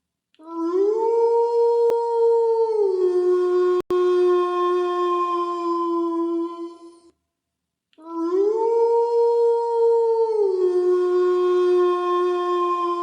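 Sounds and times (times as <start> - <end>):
dog howling: 8.2 - 13.0.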